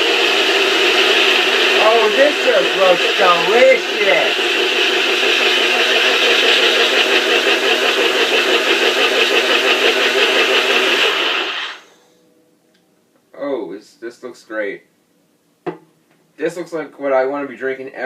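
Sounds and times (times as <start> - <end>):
blender motor running: 0.0 - 11.9.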